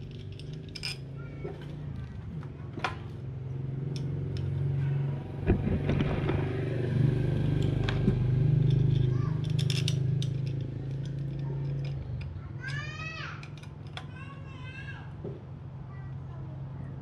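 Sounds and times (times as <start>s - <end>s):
metallic clicks and clatter: 0.0s - 2.2s, 7.6s - 12.8s, 13.4s - 14.1s.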